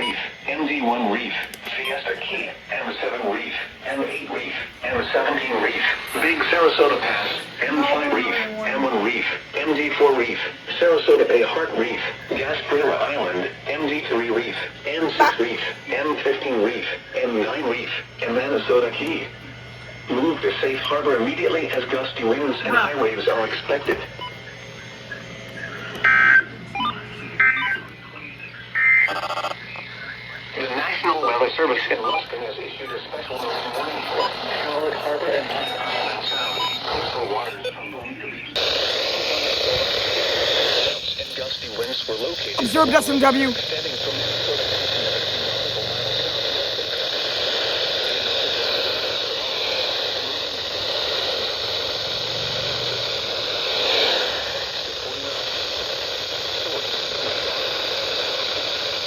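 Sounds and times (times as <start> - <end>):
radio static hiss: 0.0 - 59.0
warbling two-tone data bursts: 40.9 - 44.8.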